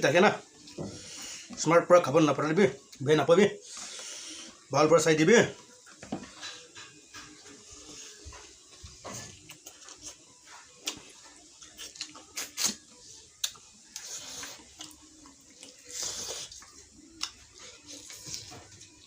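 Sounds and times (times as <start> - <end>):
chewing clicks and smacks: 10.8 - 12.8, 13.4 - 14.1
wet slurping and sucking: 11.8 - 12.9, 13.9 - 16.9.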